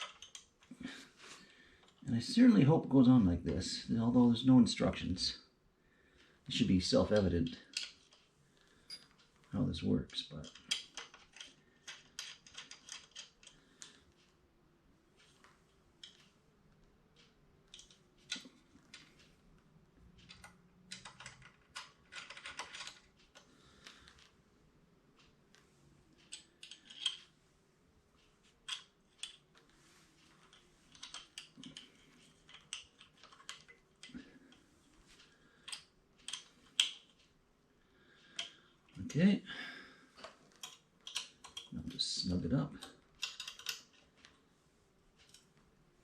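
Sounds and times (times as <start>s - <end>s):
small metal parts clicking and rattling: 0.0s - 0.8s, 7.1s - 9.3s, 10.1s - 14.0s, 20.2s - 24.3s, 26.2s - 27.3s, 28.2s - 34.2s, 35.2s - 37.3s, 40.2s - 41.8s, 42.7s - 44.4s.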